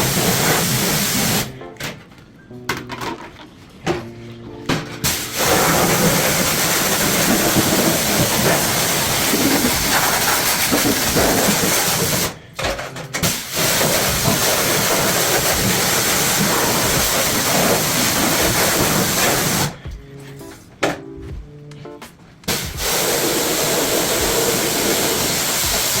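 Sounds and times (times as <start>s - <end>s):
high-pressure spray hissing: 0.0s - 1.5s, 5.0s - 12.4s, 13.2s - 19.8s, 22.5s - 26.0s.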